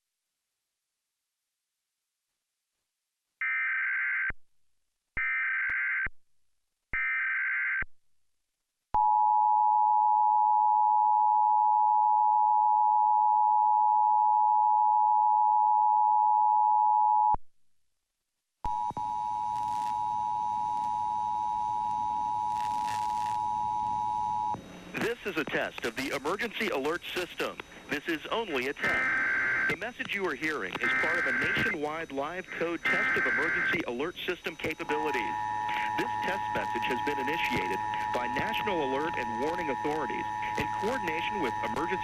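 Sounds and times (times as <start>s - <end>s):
steady tone over hiss: 22.6s - 42.0s
digital data tone bursts: 25.0s - 42.0s.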